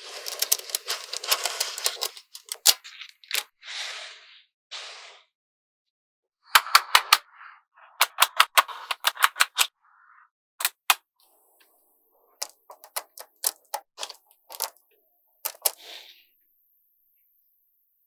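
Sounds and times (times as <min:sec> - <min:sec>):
magnetic balls clicking together: 0:00.1 - 0:03.5, 0:08.0 - 0:09.7, 0:10.6 - 0:11.0, 0:12.4 - 0:15.9.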